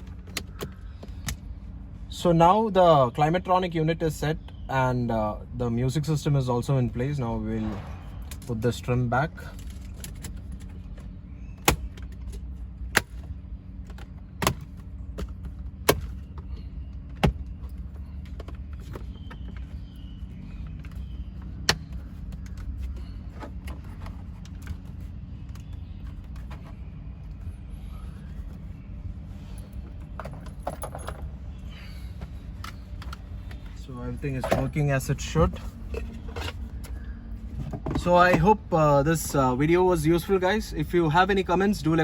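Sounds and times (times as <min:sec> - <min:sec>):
steady low hum: 0:00.0 - 0:42.0.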